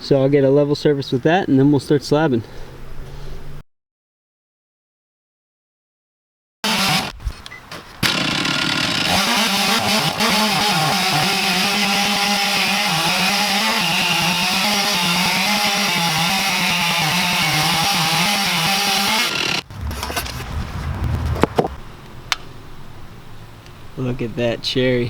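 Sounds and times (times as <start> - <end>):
chainsaw ripping a log: 6.6 - 7.2, 8.0 - 21.7.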